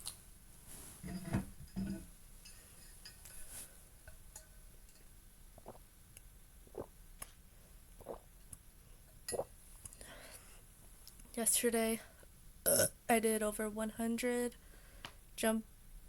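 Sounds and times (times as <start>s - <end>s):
person gulping: 5.6s - 5.9s, 6.6s - 7.0s, 8.0s - 8.3s, 12.6s - 12.9s.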